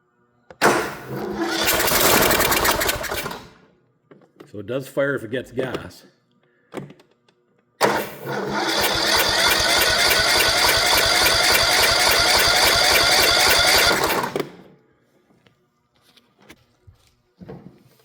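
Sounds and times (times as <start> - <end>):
mower engine cranking on starter: 0.6 - 3.6, 7.8 - 14.6.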